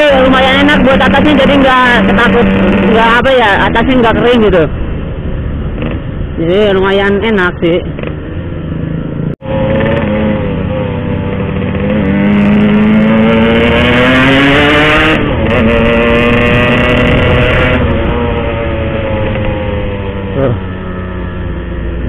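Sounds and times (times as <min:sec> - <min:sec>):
motorcycle engine accelerating: 0:00.0 - 0:06.4, 0:07.8 - 0:22.0.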